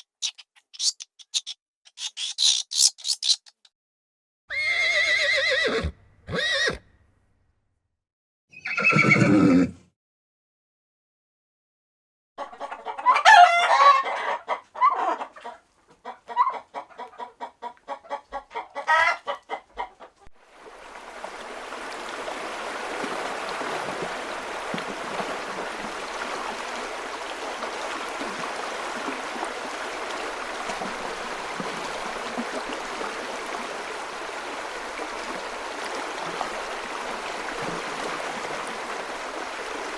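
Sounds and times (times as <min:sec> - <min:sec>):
rooster crowing: 0:13.1 - 0:14.4.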